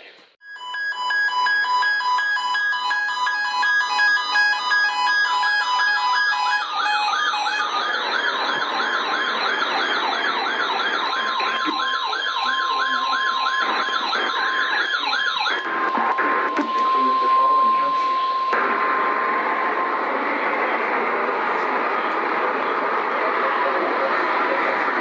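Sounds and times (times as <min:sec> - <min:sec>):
steady single-pitch tone: 0:00.4 - 0:19.2
rapid electronic beeps: 0:00.4 - 0:19.6
siren-like warble: 0:00.4 - 0:21.9.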